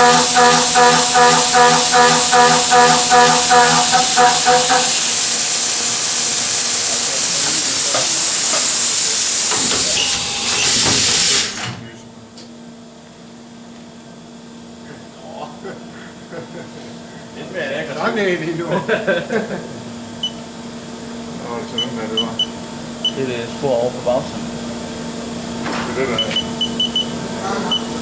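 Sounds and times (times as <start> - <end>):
pulsed musical tone: 0.0 - 5.0
milling machine hissing: 0.0 - 11.8.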